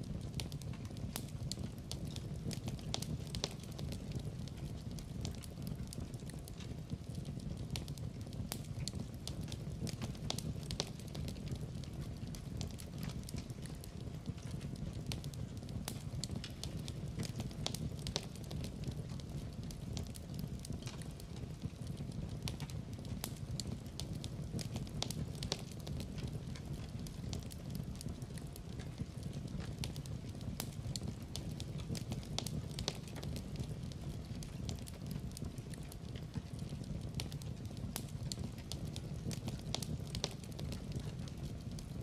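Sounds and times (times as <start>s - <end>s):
fire crackling and popping: 0.0s - 42.0s
fire rumbling: 0.0s - 42.0s.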